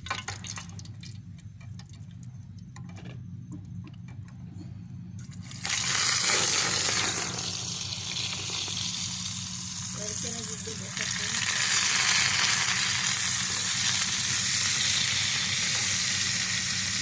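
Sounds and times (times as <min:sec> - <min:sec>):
food sizzling in hot oil: 0:05.3 - 0:17.0.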